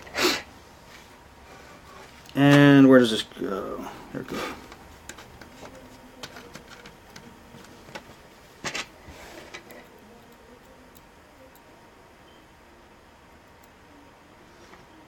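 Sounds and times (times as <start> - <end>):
laptop parts clicking: 4.6 - 11.6.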